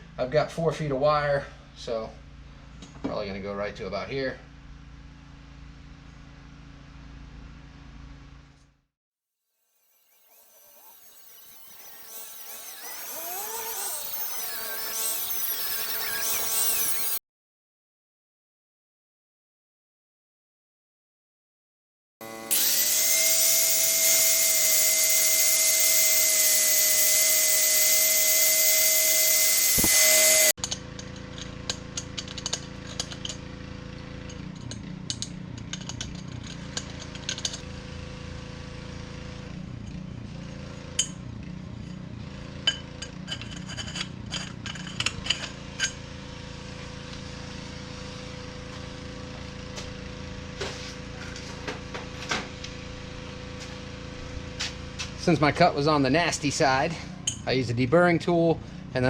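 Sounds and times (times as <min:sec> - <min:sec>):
power tool cutting metal: 0:09.7 - 0:17.2, 0:22.2 - 0:33.4.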